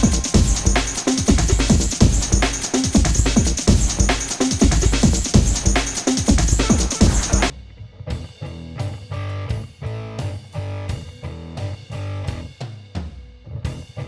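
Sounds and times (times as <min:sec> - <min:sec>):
steady drum beat: 0:00.0 - 0:07.5.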